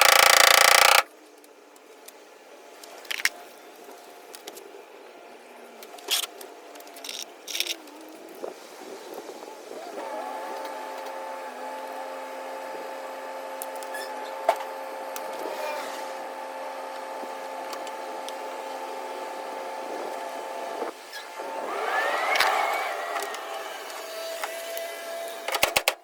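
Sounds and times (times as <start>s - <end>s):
sharp click: 0.0s - 1.1s
small motor running: 0.0s - 1.1s, 21.4s - 25.5s.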